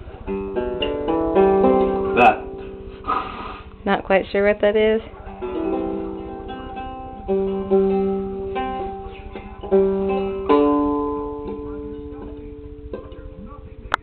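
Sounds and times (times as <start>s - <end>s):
lyre strings plucked: 0.0s - 3.9s, 5.3s - 14.0s.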